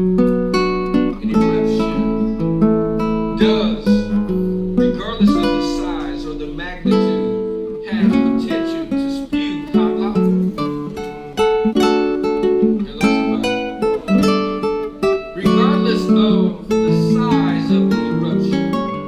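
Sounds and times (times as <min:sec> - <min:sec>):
guitar strumming chords: 0:00.0 - 0:19.0.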